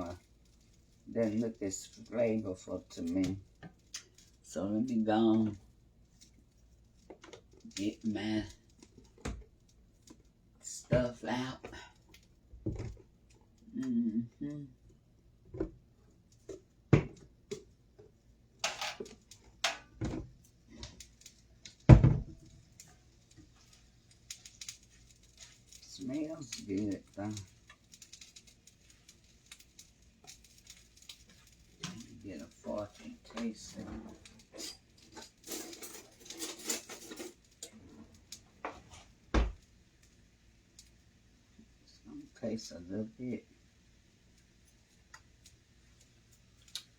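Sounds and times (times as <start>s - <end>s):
kitchen items knocking on counter: 16.9s - 17.2s, 21.9s - 22.4s
drawer and cutlery clattering: 18.6s - 20.2s, 33.8s - 38.2s.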